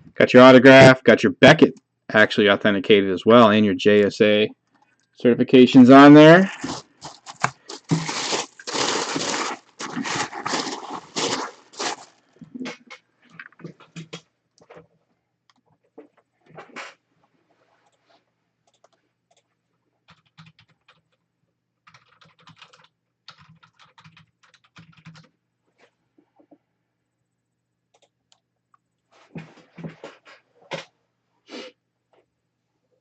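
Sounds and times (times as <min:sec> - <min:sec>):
keyboard typing: 0:18.7 - 0:19.5, 0:20.1 - 0:21.2, 0:21.8 - 0:25.3.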